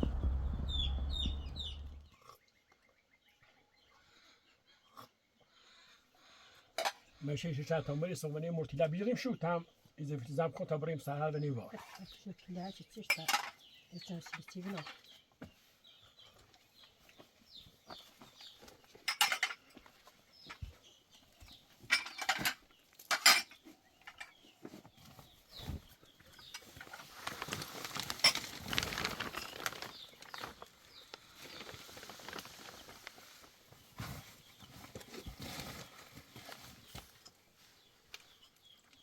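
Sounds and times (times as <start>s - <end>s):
scraping or rustling: 25.5s - 37.2s.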